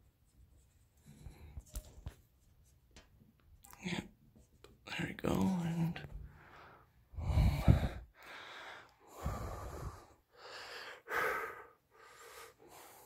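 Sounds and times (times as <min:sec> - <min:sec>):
person breathing heavily: 0:06.2 - 0:13.0.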